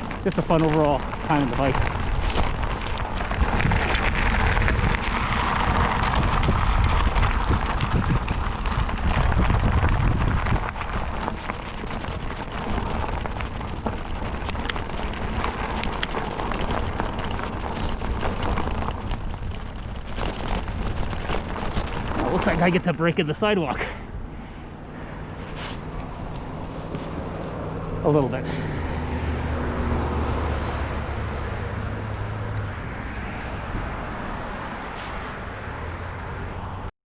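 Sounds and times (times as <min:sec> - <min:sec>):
small clicks and crunches: 0:00.0 - 0:23.8
tyres rolling on a trail: 0:00.0 - 0:36.9
wind buffeting microphone: 0:00.0 - 0:36.9.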